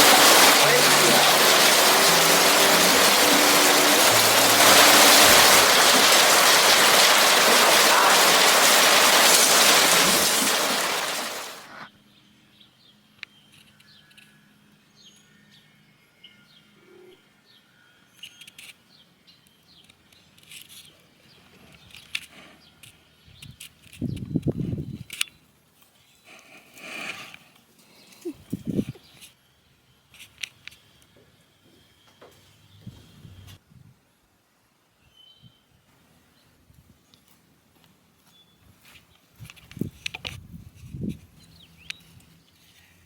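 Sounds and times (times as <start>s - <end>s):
birds chirping: 0.0s - 11.7s
water rushing: 0.0s - 11.8s.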